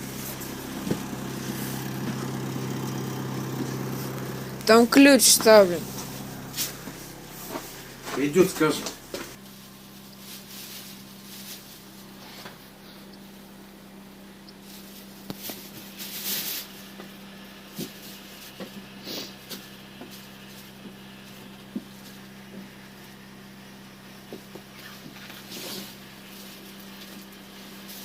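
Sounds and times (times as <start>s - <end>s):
steady low hum: 0.0s - 18.4s.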